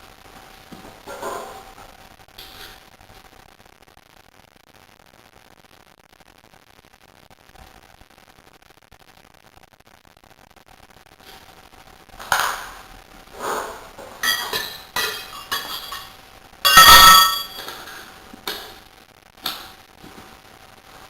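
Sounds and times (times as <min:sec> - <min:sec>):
loud metal clatter: 0:14.1 - 0:18.7
metal tools clinking: 0:14.2 - 0:18.8.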